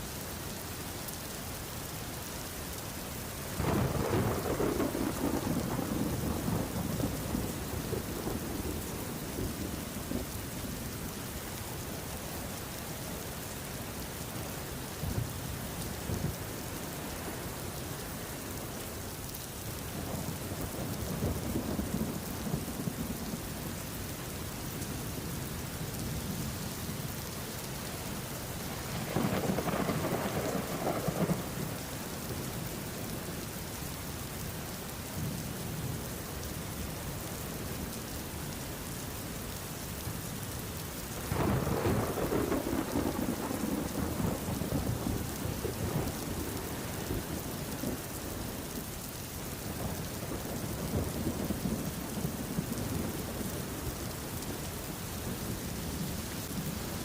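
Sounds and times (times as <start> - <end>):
steady rainfall: 0.0 - 57.0
thunder rumbling: 3.6 - 10.4, 28.8 - 33.1, 41.2 - 48.7.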